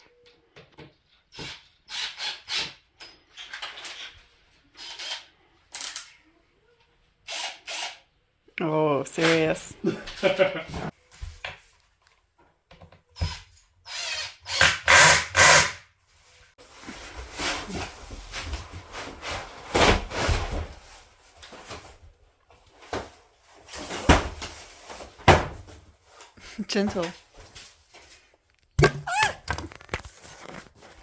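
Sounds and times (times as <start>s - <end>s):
rubbing and scraping: 27.5s - 31.0s.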